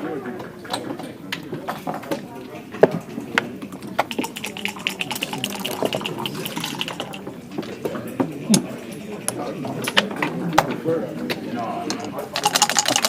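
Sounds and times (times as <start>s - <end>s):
dice rattling in a cup: 4.0s - 7.2s, 12.0s - 13.0s
checkers clicking on board: 12.4s - 13.0s.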